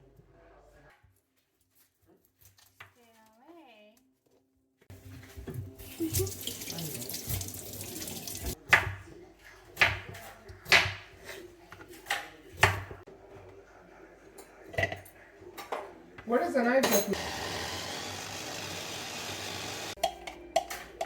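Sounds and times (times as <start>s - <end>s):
kitchen tap running: 5.8s - 8.6s.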